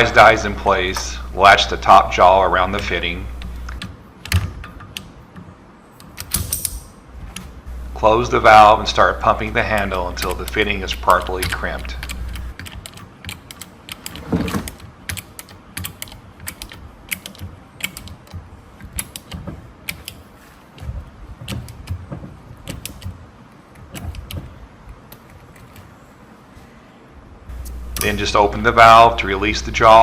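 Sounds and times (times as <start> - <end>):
crimping tool clicks and creaks: 9.3 - 26.0.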